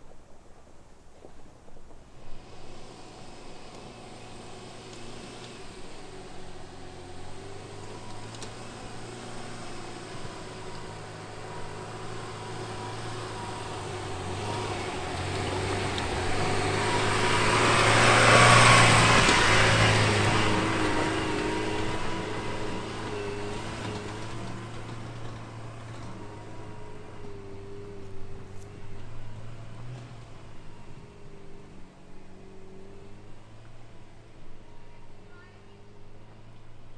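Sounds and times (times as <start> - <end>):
car engine running: 1.2 - 36.9
tyres rushing: 4.6 - 31.4.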